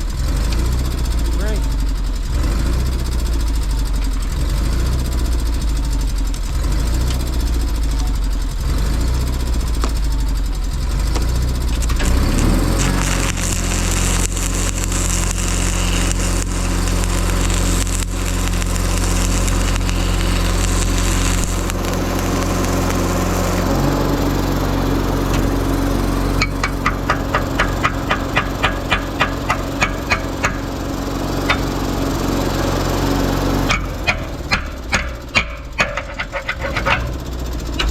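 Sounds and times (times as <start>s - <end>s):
welder engine running: 0.0s - 37.9s
welding arc crackling hiss: 11.1s - 37.0s
regular ticks: 11.2s - 23.6s.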